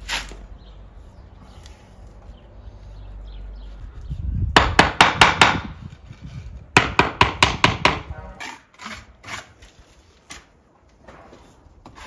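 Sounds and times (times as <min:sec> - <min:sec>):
sharp knocks of masonry tapping: 0:04.5 - 0:05.8, 0:06.7 - 0:08.1.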